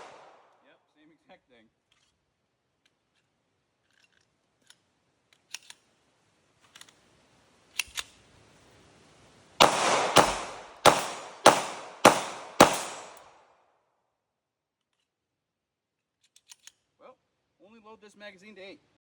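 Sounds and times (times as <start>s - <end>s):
pistol shots with echo: 0.0s - 0.4s, 9.6s - 13.3s
metallic handling clicks: 3.9s - 5.8s, 16.2s - 16.8s.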